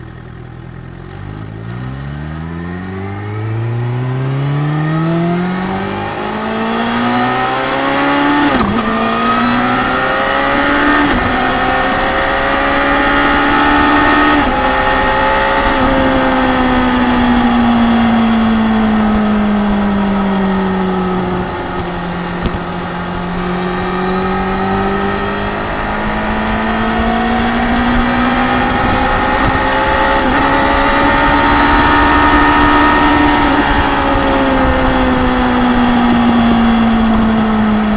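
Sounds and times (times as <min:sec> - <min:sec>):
motorcycle accelerating through gears: 0:00.0 - 0:37.9.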